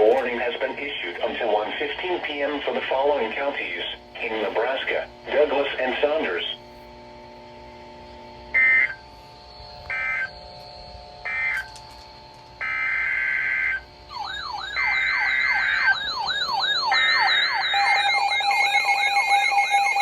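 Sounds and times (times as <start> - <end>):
alert data bursts: 8.5 - 20.0
fast yelping siren: 8.5 - 20.0
steady alert tone: 14.1 - 20.0.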